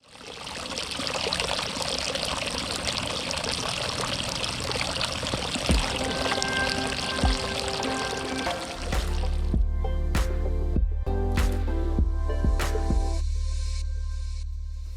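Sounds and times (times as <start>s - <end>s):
steady rushing water-like noise: 0.0s - 9.5s
music: 5.7s - 14.9s.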